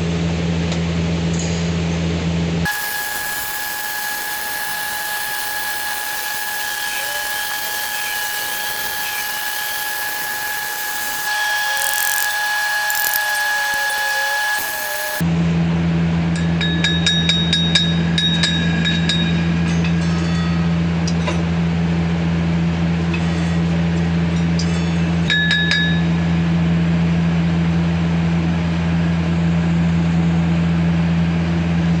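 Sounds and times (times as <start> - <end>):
low welding machine hum: 2.7 - 15.2
sharp metallic clinks: 2.7 - 15.2.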